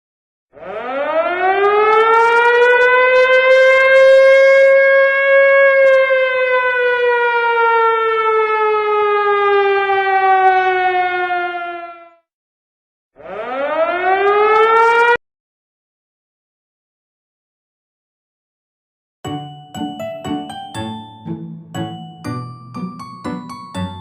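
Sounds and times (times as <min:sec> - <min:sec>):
air-raid siren wailing: 0:00.6 - 0:12.3, 0:13.2 - 0:15.2.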